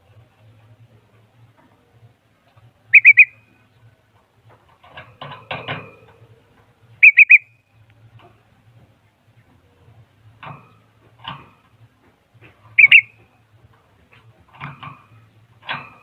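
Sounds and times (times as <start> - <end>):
bird whistled call: 2.9 - 3.4, 7.0 - 7.6, 12.8 - 13.2
scratchy bird call: 2.9 - 3.4, 7.0 - 7.4, 12.8 - 13.2.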